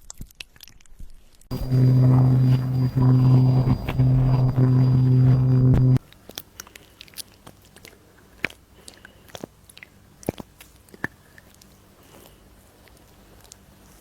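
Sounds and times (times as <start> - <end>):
small electric device humming: 1.5 - 6.0.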